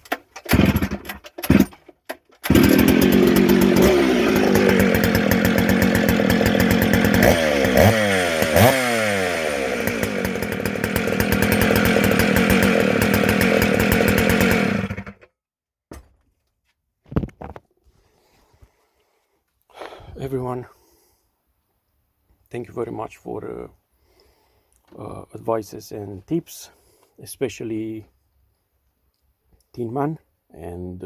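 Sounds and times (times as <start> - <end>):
chainsaw running and revving: 0.5 - 1.7, 2.4 - 15.2.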